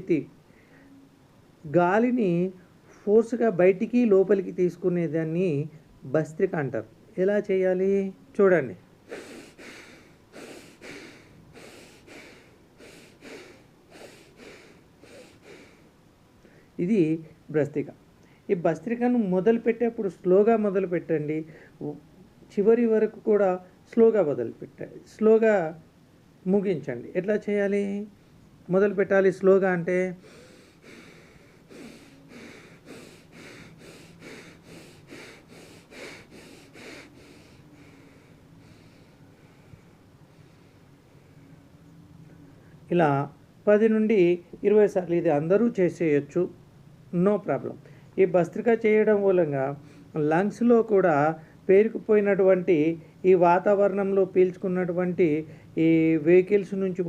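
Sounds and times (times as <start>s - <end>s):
forceful nasal breathing: 9.0s - 16.7s, 30.1s - 41.5s.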